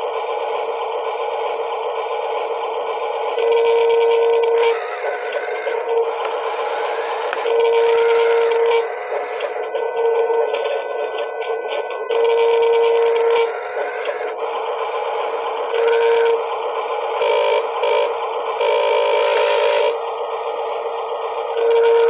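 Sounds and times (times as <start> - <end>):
electronic toy beep tone: 3.4 - 13.6, 14.4 - 16.5, 17.2 - 20.0
warbling electronic tone: 3.9 - 11.0, 17.2 - 20.0
steady electronic tones: 4.6 - 13.7, 17.2 - 20.0.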